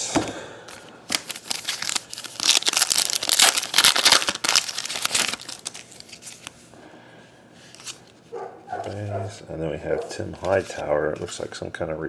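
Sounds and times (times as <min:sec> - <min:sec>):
foil wrapper crinkling: 0:01.1 - 0:06.5.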